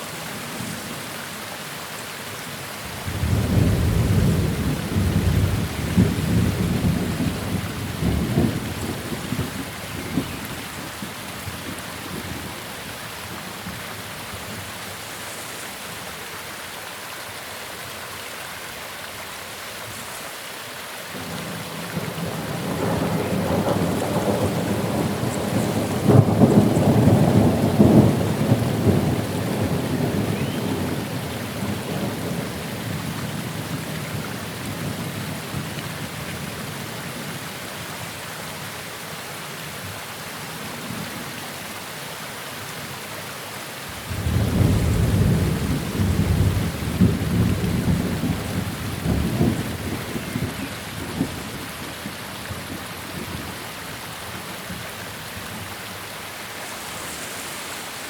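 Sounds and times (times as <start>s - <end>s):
steady rain: 0.0s - 58.0s
thunder rumbling: 2.9s - 10.4s, 21.2s - 35.7s, 44.0s - 53.5s.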